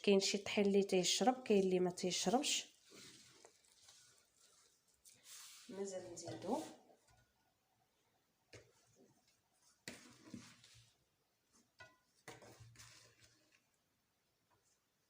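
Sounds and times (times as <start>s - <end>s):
dough kneading knocks and rustles: 8.5s - 13.8s.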